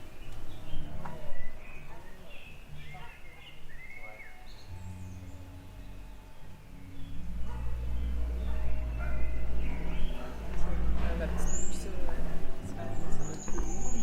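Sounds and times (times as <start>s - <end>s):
songbirds chirping: 0.0s - 14.0s
whistled bird call: 0.5s - 5.2s
low background hum: 4.7s - 14.0s.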